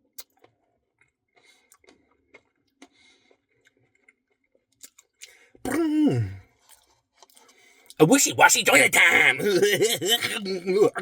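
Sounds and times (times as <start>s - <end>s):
soft chewing: 0.1s - 5.7s, 6.3s - 8.0s
mouth eating sounds: 4.8s - 7.4s
person groaning: 5.7s - 6.4s, 8.7s - 11.0s.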